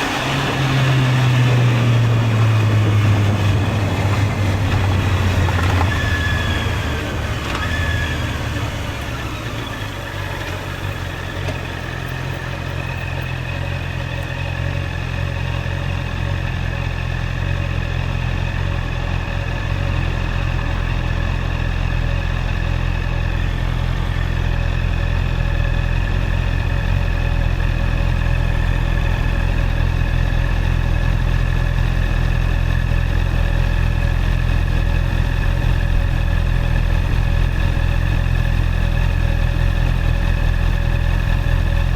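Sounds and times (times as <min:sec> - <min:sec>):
motorcycle engine idling: 0:00.0 - 0:41.9.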